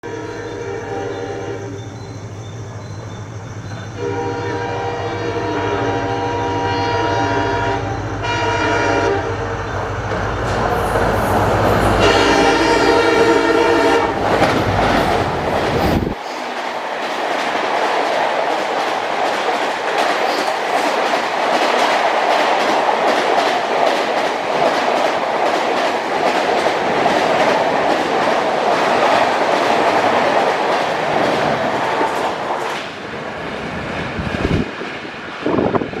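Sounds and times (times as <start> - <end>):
diesel locomotive engine rumbling: 0.0 - 21.5, 22.3 - 36.0
train wheels clacking over rail joints: 9.7 - 33.2.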